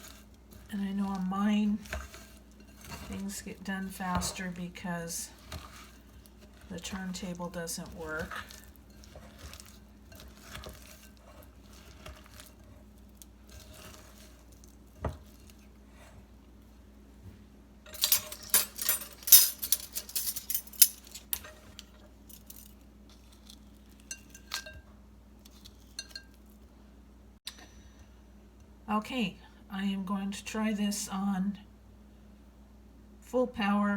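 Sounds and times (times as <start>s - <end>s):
spoon clinking against glass bowl: 25.9s - 26.4s.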